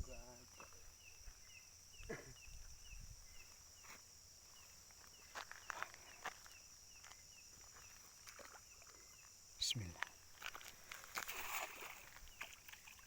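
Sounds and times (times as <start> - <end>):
night insects chirring: 0.0 - 13.0
short insect chirp: 0.0 - 13.0.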